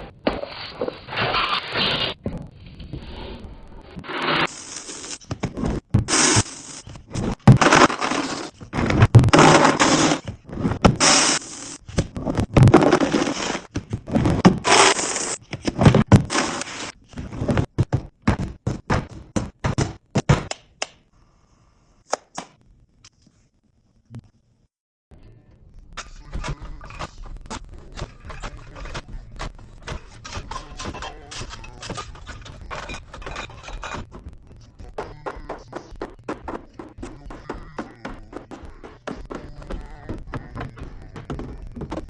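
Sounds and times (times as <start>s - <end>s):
items knocking and scraping: 4.0s - 20.6s, 26.0s - 34.4s, 35.7s - 42.0s.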